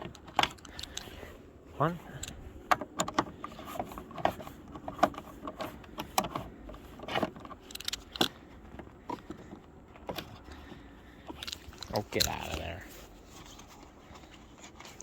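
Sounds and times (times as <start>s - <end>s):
clicks knocks and rattles: 2.2s - 12.6s.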